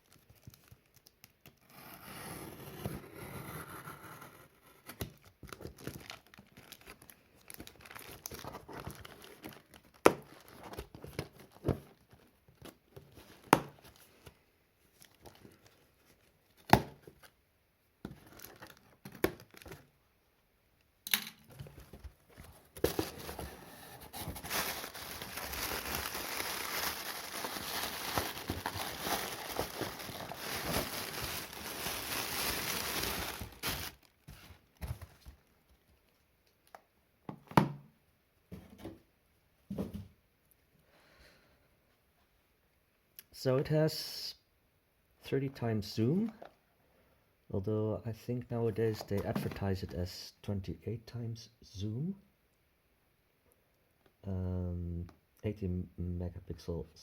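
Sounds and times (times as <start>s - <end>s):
wrapping crinkling and tearing: 5.2s - 12.3s, 18.2s - 19.9s, 22.8s - 34.2s
packaging rustling: 5.2s - 17.3s, 18.1s - 19.9s, 21.5s - 35.4s.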